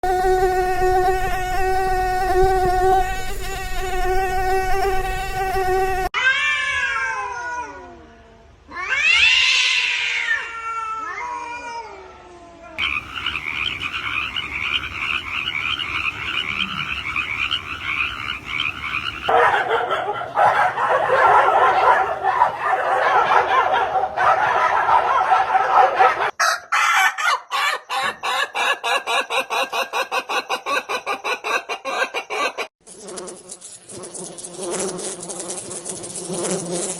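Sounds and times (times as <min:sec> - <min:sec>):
insect buzz: 0:00.0 - 0:06.2, 0:12.8 - 0:19.3, 0:32.8 - 0:36.9
chorus of chirps and trills: 0:12.8 - 0:19.3
fast pulsing animal call: 0:12.8 - 0:19.3
wailing animal calls: 0:12.8 - 0:19.3.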